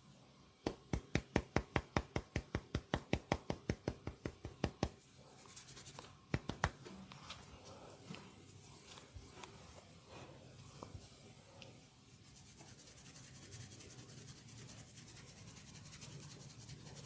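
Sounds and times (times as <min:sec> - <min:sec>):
hands slapping body: 0:00.6 - 0:05.0, 0:06.3 - 0:06.9.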